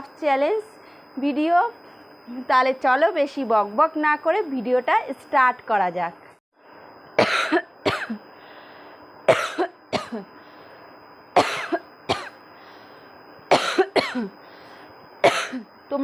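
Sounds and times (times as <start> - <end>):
woman coughing: 7.2 - 8.2, 9.3 - 10.3, 11.4 - 12.4, 13.5 - 14.4, 15.2 - 15.7.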